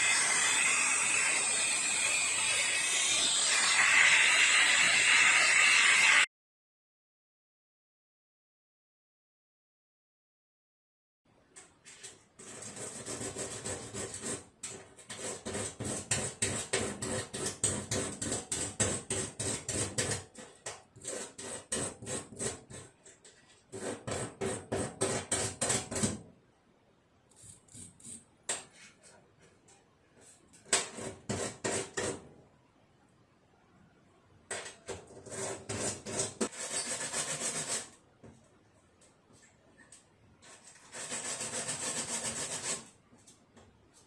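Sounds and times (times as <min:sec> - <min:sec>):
rapid rubbing strokes: 0:40.5 - 0:42.8.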